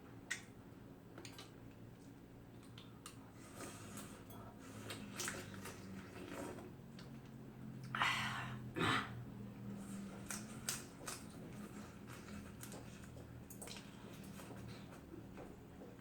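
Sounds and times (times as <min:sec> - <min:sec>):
faint steady hum: 0:00.0 - 0:16.0
chewing and small clicks: 0:01.1 - 0:03.2, 0:09.9 - 0:16.0.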